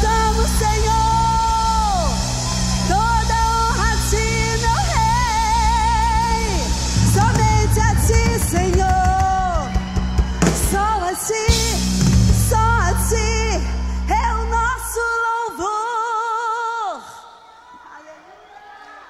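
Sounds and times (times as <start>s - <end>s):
band playing: 0.0s - 13.7s
woman singing with vibrato: 0.0s - 18.2s.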